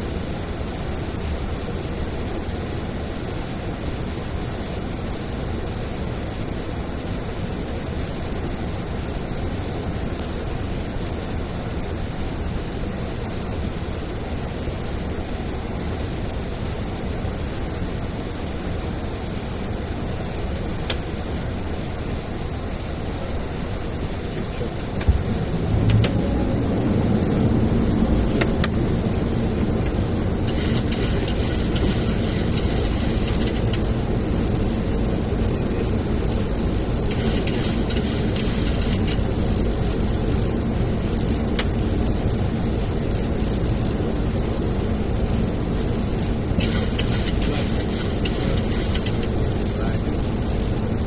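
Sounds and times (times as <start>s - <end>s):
aircraft engine noise: 0.0s - 51.0s
cockpit airflow noise: 14.0s - 51.0s.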